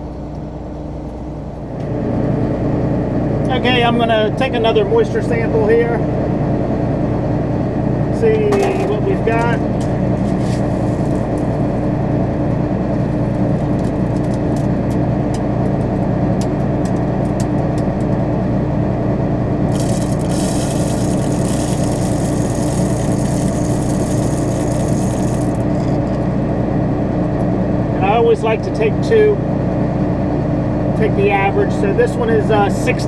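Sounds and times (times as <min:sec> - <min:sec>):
combine harvester droning: 0:00.0 - 0:33.0.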